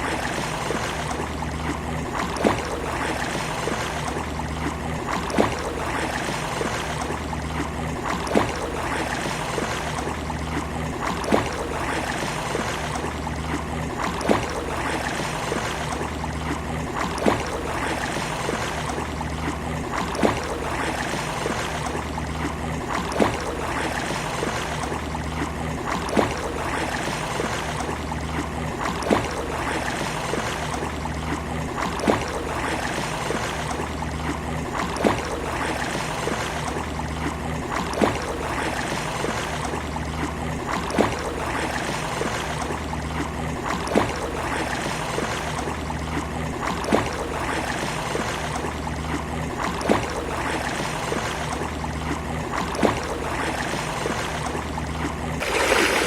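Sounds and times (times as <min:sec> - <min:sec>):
sharp water splash: 0:00.0 - 0:33.8, 0:55.4 - 0:56.0
sea water washing on beach: 0:00.0 - 0:56.0.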